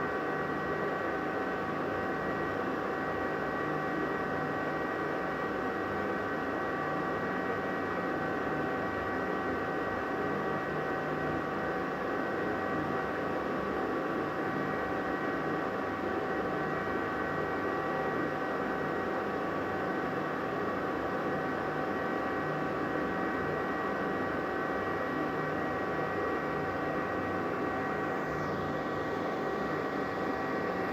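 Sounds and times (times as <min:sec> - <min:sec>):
high-pitched fan whine: 0:00.0 - 0:30.9.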